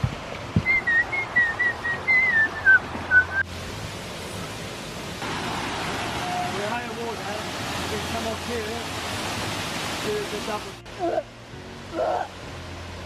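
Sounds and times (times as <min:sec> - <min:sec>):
rushing water: 0:00.0 - 0:13.0
person whistling wavering notes: 0:00.6 - 0:03.4.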